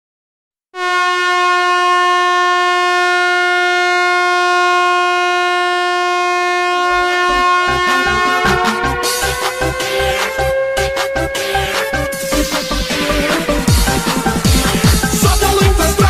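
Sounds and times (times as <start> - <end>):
goal horn blast: 0.8 - 4.0, 4.6 - 15.1
song beat: 7.4 - 16.0.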